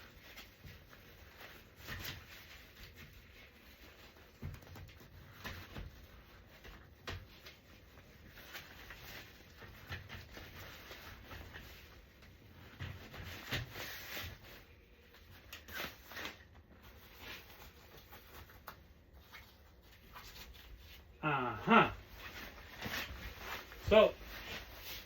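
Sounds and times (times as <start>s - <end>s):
soft rustling: 0.0s - 21.2s, 22.0s - 25.0s.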